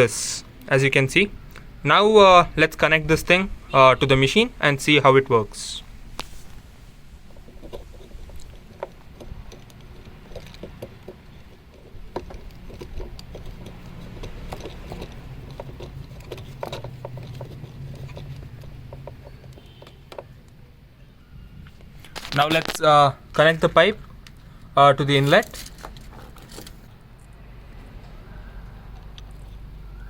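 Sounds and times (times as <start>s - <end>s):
plastic fittings clicking and knocking: 7.3s - 20.6s.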